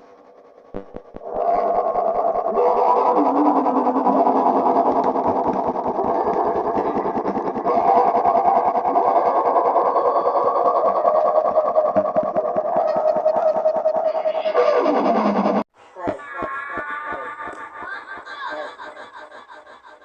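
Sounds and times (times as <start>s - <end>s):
distorted buzzing with crackle: 0.7s - 1.4s.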